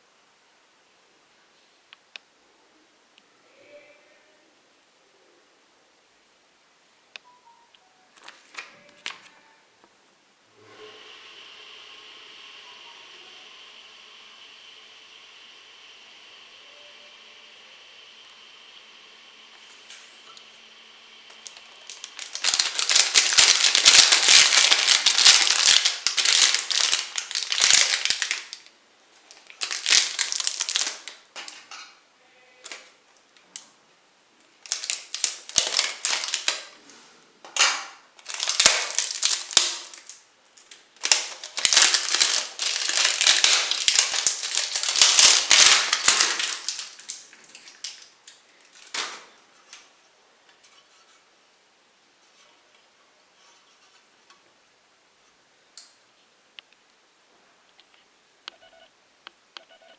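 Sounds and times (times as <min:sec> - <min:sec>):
packaging crinkling: 0:21.3 - 0:31.8, 0:34.5 - 0:36.8, 0:37.6 - 0:49.8.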